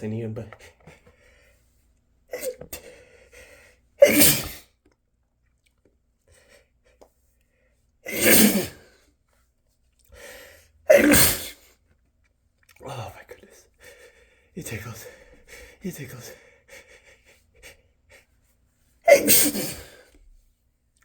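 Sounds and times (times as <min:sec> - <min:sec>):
man sneezing hard: 0:02.3 - 0:03.0, 0:04.0 - 0:04.8, 0:08.1 - 0:09.0, 0:10.9 - 0:11.7, 0:19.0 - 0:20.1
short breath in: 0:10.1 - 0:10.7.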